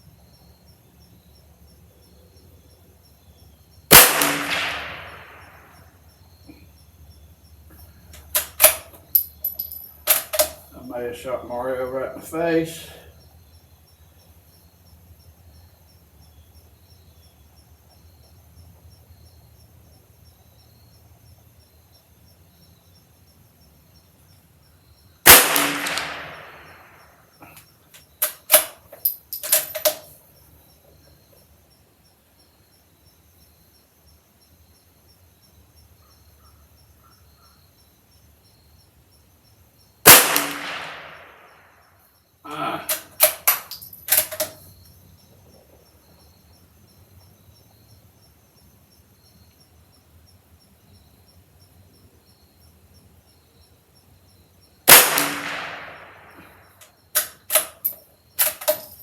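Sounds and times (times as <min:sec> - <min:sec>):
rifle shots cracking: 0:03.9 - 0:05.8, 0:08.2 - 0:08.9, 0:10.1 - 0:10.7, 0:25.2 - 0:27.6, 0:28.2 - 0:28.8, 0:40.1 - 0:41.7, 0:42.8 - 0:44.6, 0:54.9 - 0:56.6
metallic clicks of rifle bolt: 0:08.1 - 0:10.7, 0:25.3 - 0:26.8, 0:27.4 - 0:30.2, 0:40.1 - 0:41.2, 0:42.8 - 0:44.7, 0:54.9 - 0:59.0.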